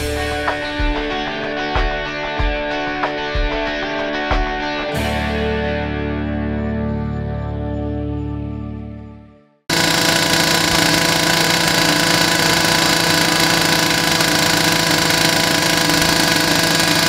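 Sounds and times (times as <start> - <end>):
droning machine noise: 9.7 - 17.0.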